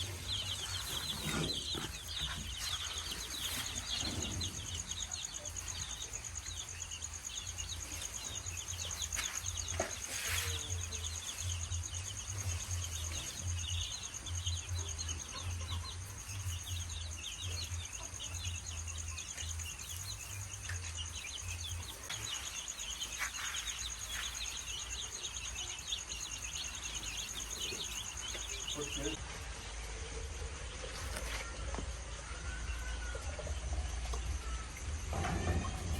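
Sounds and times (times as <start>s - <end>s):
chicks peeping: 0.0s - 35.9s.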